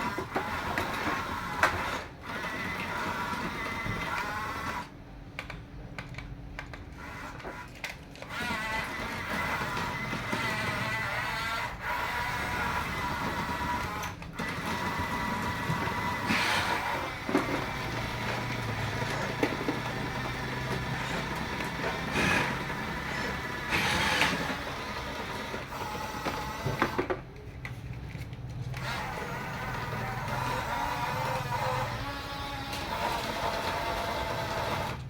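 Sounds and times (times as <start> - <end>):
toy gear motors whining: 7.0 - 27.1, 28.7 - 35.0.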